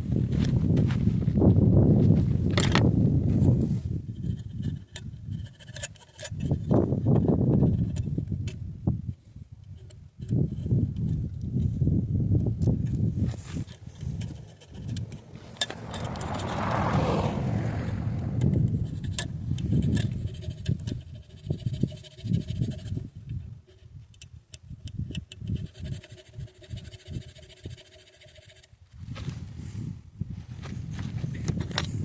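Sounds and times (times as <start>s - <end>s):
scraping: 12.8s - 22.9s.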